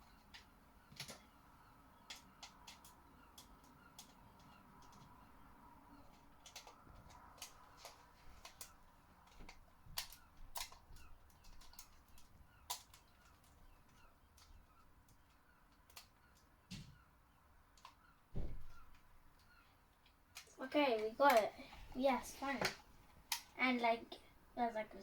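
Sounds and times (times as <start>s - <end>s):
screwdriver and plastic parts clicking: 0.1s - 1.4s, 2.0s - 5.3s, 6.0s - 16.5s, 17.7s - 18.1s, 18.8s - 21.5s.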